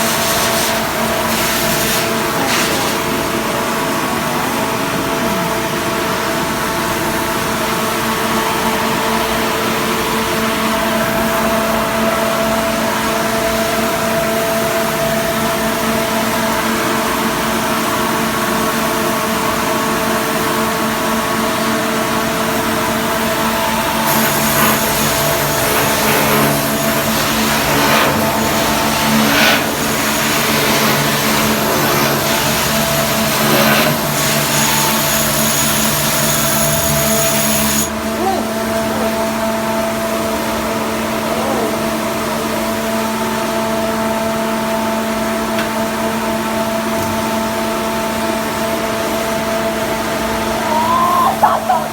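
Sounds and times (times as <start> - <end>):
motor whining: 22.4 - 39.1.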